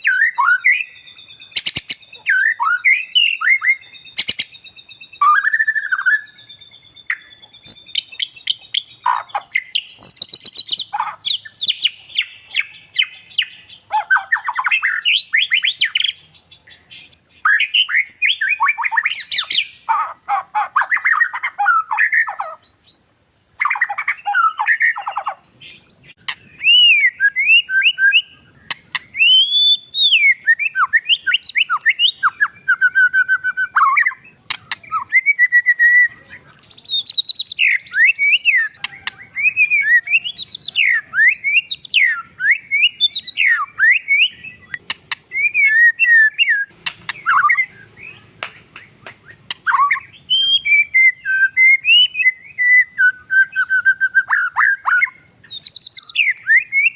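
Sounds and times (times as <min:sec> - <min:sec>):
steady high hiss: 0:00.0 - 0:20.2
songbird whistles and trills: 0:00.0 - 0:56.9.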